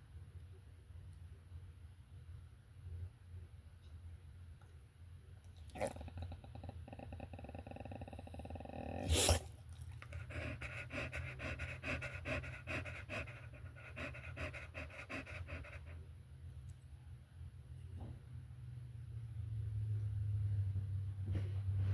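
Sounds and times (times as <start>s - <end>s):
dog panting: 9.0s - 16.2s.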